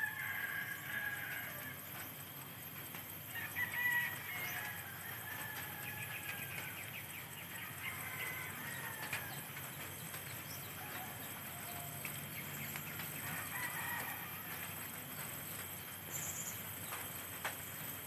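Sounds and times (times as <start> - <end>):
rooster crowing: 0.0 - 2.0, 3.3 - 9.8, 10.6 - 12.2, 13.2 - 15.2.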